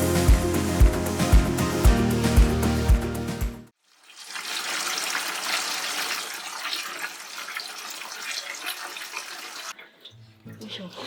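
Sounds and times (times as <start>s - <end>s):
water spraying from shower head: 0.0s - 3.4s
music: 0.0s - 3.7s.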